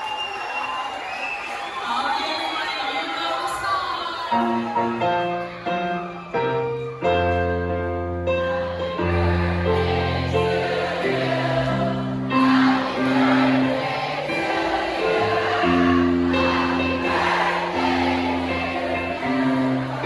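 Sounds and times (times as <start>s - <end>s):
choir singing long held notes: 8.4s - 20.0s.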